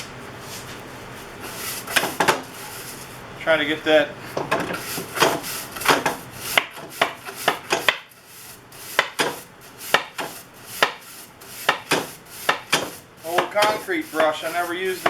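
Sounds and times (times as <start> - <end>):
stiff brush sweeping wood: 0.4 - 3.3, 4.3 - 15.0.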